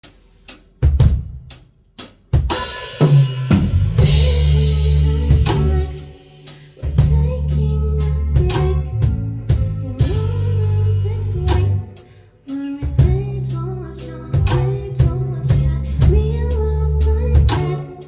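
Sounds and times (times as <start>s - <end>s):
bass: 0.0s - 18.0s
cymbals: 2.5s - 7.2s
live band playing: 3.0s - 18.0s.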